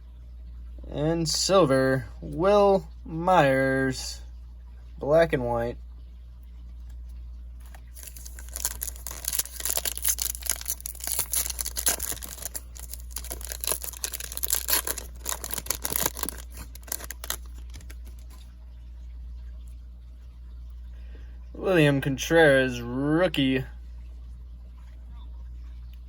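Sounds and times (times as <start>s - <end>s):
low background hum: 0.0s - 26.0s
foil wrapper tearing and crinkling: 7.6s - 18.4s
trading cards rustling: 7.6s - 18.4s.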